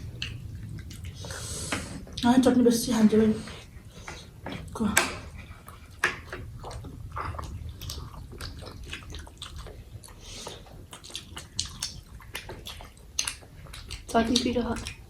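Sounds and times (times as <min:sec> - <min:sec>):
food chewing: 0:00.0 - 0:15.0
wet mouth clicks and smacks: 0:05.7 - 0:15.0.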